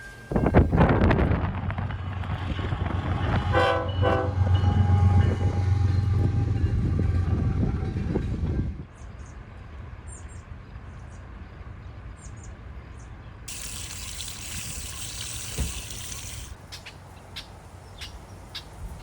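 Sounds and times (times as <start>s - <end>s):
water gushing: 13.5s - 16.6s.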